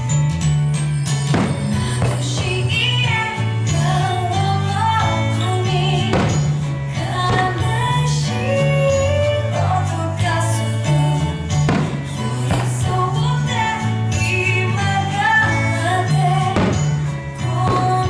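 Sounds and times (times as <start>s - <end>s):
sharp percussive hits: 1.2s - 2.6s, 11.7s - 12.8s
person singing: 2.0s - 18.0s.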